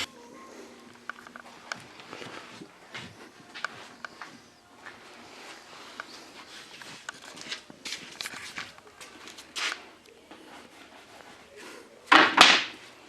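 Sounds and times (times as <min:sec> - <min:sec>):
rustling and shuffling: 0:00.0 - 0:13.0
wooden pieces knocking: 0:12.1 - 0:12.8.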